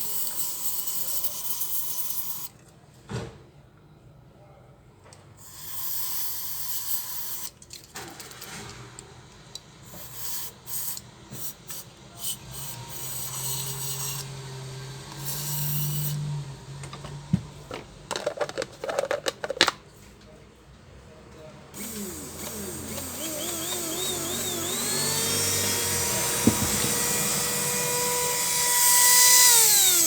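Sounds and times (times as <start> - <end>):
spice grinder grinding: 9.9 - 19.7, 21.8 - 30.0
sharp knocks: 26.2 - 27.5.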